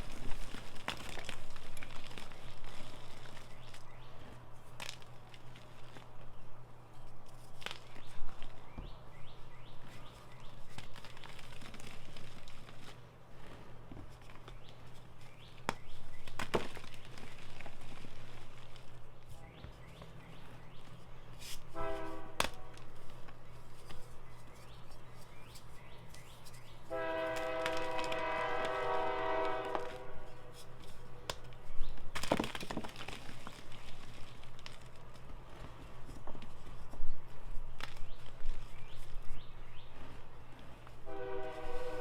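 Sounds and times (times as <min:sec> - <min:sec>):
blocks being crushed: 0:00.0 - 0:06.2, 0:13.7 - 0:20.1, 0:30.6 - 0:37.0
horn-like tone: 0:21.7 - 0:22.4, 0:26.9 - 0:30.3, 0:41.0 - 0:42.0.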